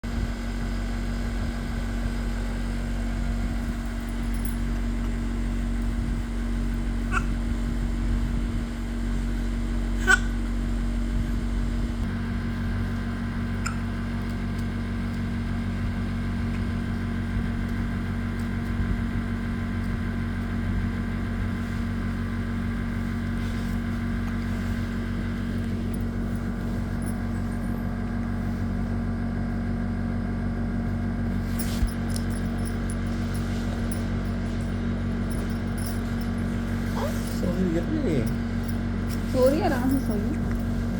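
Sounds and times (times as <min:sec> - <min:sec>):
machine hum: 0:00.0 - 0:40.9
baby hiccuping: 0:07.1 - 0:07.4.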